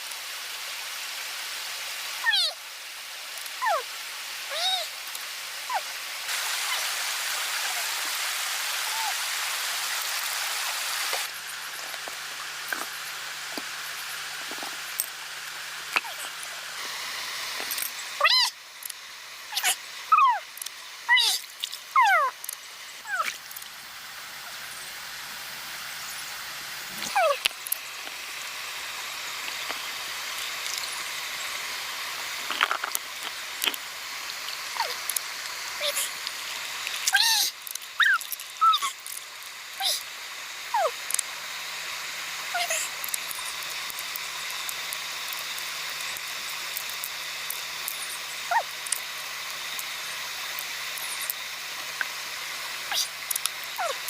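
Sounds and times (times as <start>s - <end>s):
steady hiss: 0.0s - 54.0s
short mewing animal calls: 19.5s - 20.4s.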